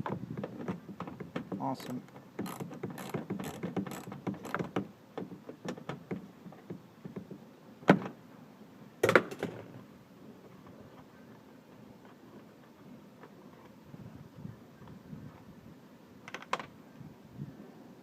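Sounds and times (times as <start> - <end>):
hand ratchet clicking: 2.4 - 4.6.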